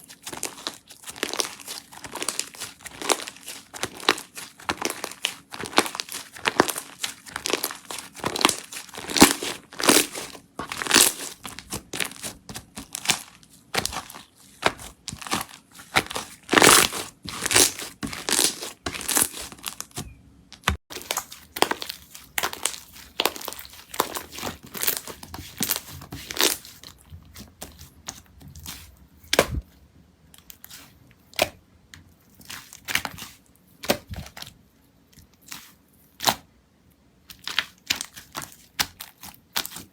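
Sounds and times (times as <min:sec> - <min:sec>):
slime squishing and popping: 0:00.1 - 0:26.6.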